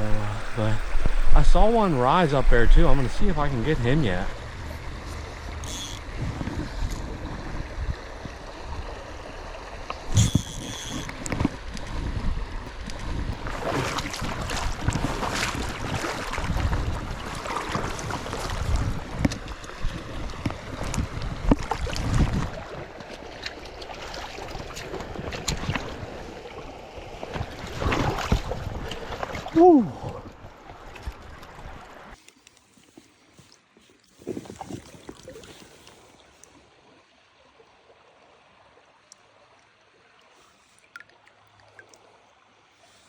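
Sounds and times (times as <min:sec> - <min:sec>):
wind buffeting microphone: 0:00.0 - 0:05.0, 0:06.1 - 0:09.0, 0:11.2 - 0:22.7
small stream running: 0:00.0 - 0:43.0.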